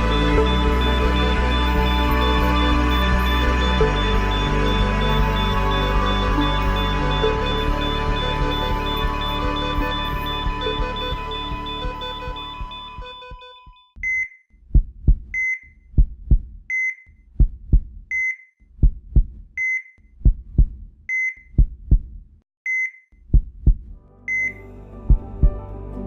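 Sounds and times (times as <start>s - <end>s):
heartbeat thump: 0.0s - 13.4s, 14.0s - 18.2s, 18.8s - 19.6s, 20.2s - 22.4s, 23.2s - 24.5s, 25.1s - 25.6s
patient monitor beep: 0.0s - 14.3s, 24.3s - 24.6s.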